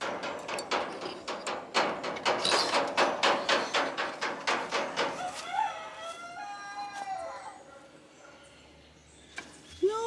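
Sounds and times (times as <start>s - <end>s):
rapid sharp knocks: 0.0s - 5.2s.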